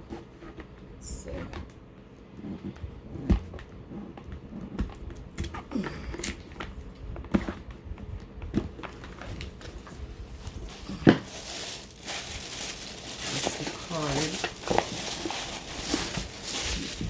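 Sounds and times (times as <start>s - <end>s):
paper rustling: 8.8s - 17.0s.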